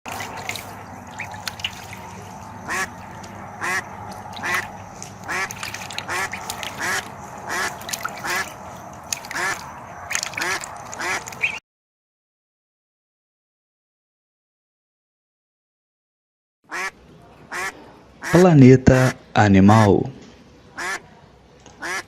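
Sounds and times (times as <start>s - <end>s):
duck quacking: 2.3s - 8.6s, 9.2s - 9.7s, 10.3s - 11.6s, 16.7s - 18.4s, 20.8s - 21.0s, 21.8s - 22.0s.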